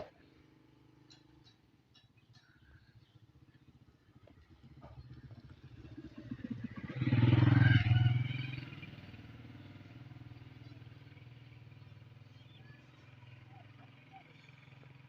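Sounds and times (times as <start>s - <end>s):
engine running: 3.6s - 15.0s.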